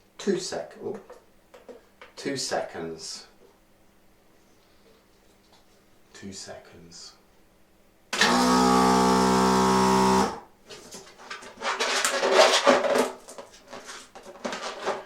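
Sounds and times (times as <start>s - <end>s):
electric mixer motor: 8.2s - 10.4s.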